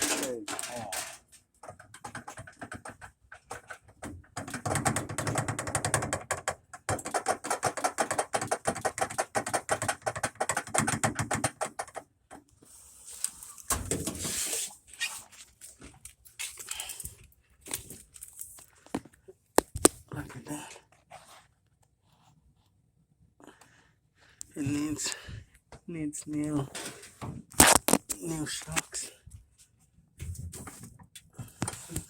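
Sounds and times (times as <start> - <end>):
washer tub knocking and rattling: 0.0 - 11.9.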